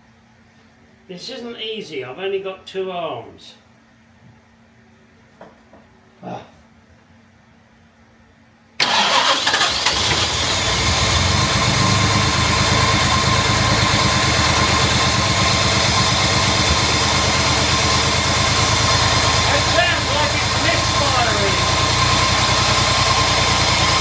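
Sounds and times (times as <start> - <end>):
car engine starting and running: 8.8 - 24.0.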